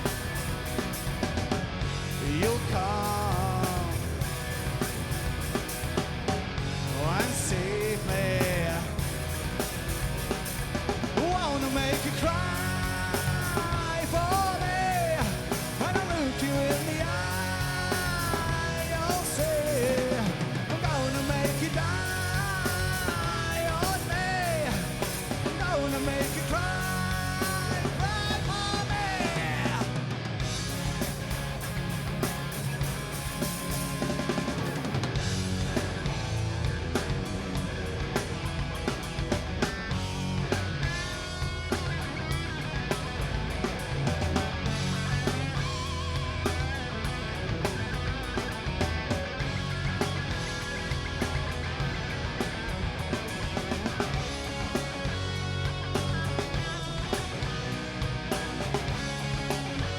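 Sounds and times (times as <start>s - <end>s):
bass guitar: 0.0s - 59.9s
drums: 0.0s - 59.9s
electric guitars: 0.0s - 59.9s
lead vocals singing: 2.1s - 4.4s, 6.9s - 9.3s, 11.1s - 30.2s.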